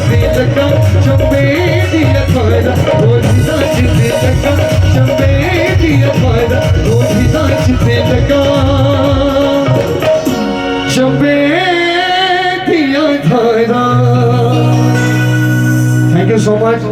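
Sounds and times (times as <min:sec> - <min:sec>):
hand drum rhythm: 0:00.0 - 0:10.6
sliding melody line: 0:00.0 - 0:12.9.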